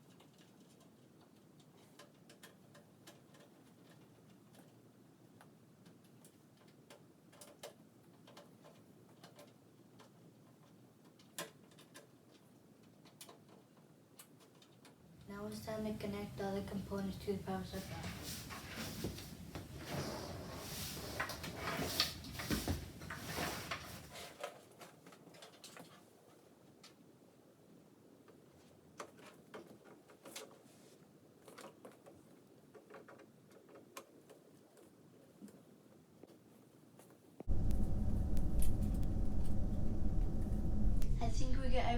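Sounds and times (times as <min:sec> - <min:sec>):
faint cable clicks and taps: 0:00.0 - 0:15.0.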